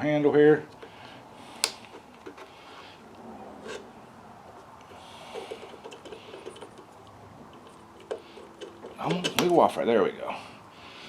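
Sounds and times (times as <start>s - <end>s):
faint handling rattle: 4.5s - 9.8s.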